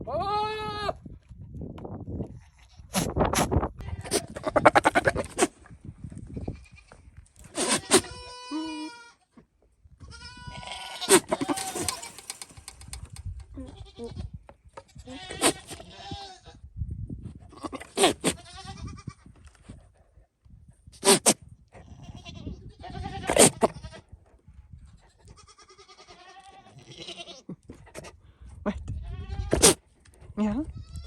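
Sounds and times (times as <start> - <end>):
goat calling: 3.8 - 5.6, 6.4 - 9.2, 10.0 - 12.7, 14.9 - 16.6, 21.0 - 24.0, 25.2 - 27.4.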